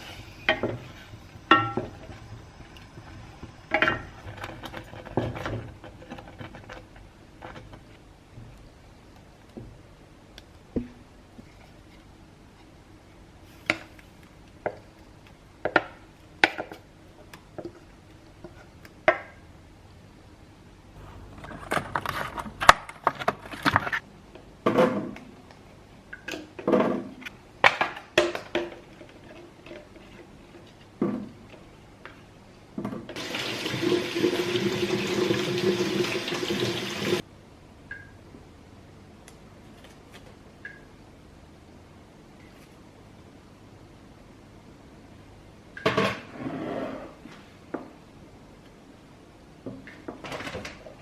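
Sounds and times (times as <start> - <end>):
kitchen utensils knocking: 1.5 - 2.1
liquid running: 33.2 - 37.2.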